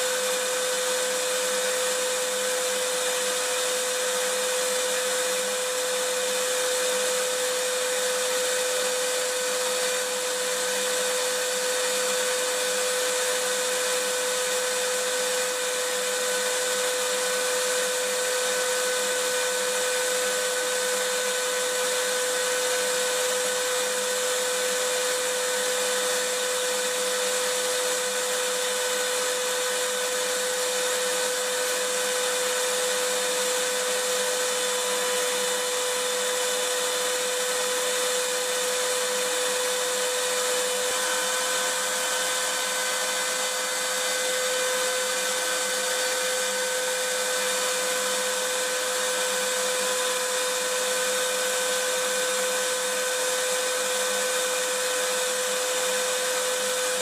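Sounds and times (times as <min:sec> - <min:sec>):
vacuum cleaner running: 0:00.0 - 0:57.0.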